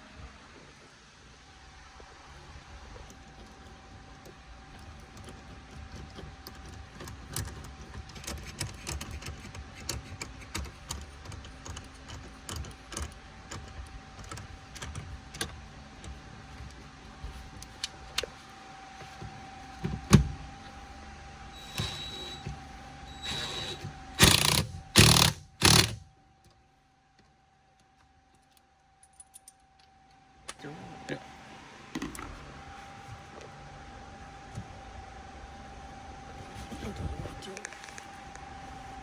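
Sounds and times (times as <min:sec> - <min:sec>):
faint steady whine: 0:00.0 - 0:39.0
small clicks and rattles: 0:02.8 - 0:18.4.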